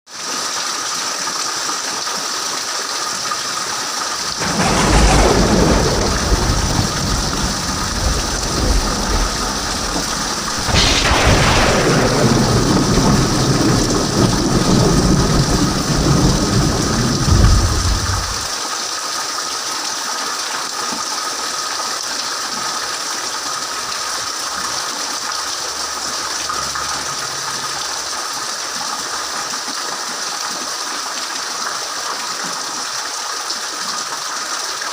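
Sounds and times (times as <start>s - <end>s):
heavy rain falling: 0.2s - 34.9s
thunder claps and rumble: 4.2s - 18.5s.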